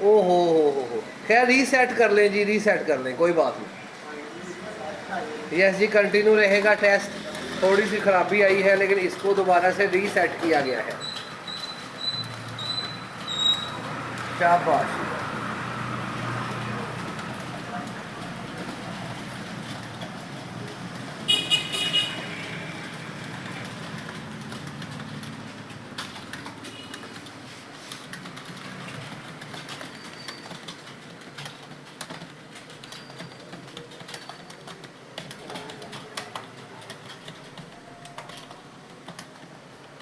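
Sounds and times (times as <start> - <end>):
keyboard keys clicking: 5.6 - 40.0.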